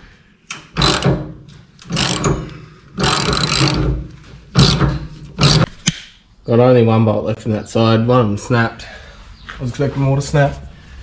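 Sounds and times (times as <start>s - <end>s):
power tool bursts: 1.9s - 4.0s.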